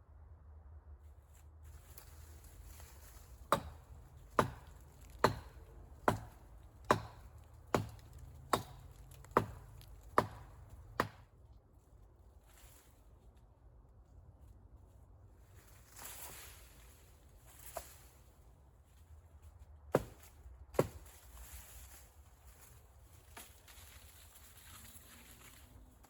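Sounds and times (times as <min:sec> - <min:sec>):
axe chopping wood: 0:03.5 - 0:11.3, 0:19.9 - 0:21.1.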